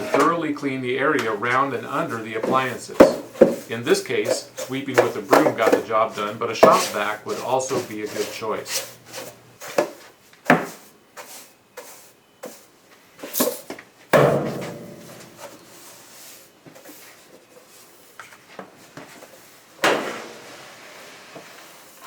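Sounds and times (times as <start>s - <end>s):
objects knocking and clattering: 1.2s - 10.8s, 13.2s - 15.8s.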